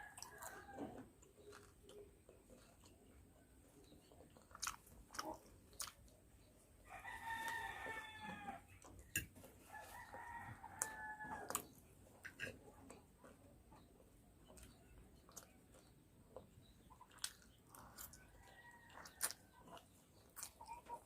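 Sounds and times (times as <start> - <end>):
chewing: 0.0 - 21.0
rooster crowing: 6.9 - 8.6, 9.7 - 11.5.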